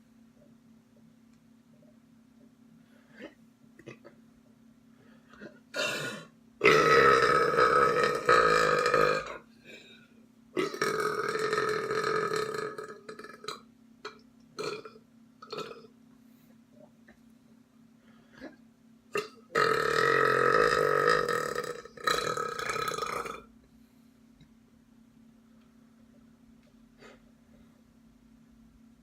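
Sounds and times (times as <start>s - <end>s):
loud burps: 3.2s - 4.2s, 5.3s - 9.4s, 10.6s - 15.9s, 18.4s - 23.5s.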